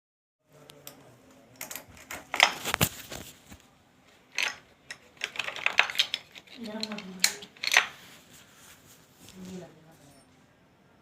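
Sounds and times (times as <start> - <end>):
metal tools clicking and clinking: 4.3 - 8.0.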